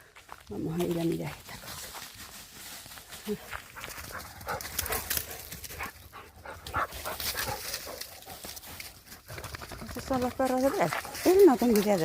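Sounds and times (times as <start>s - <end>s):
dogs making small sounds: 3.2s - 12.0s.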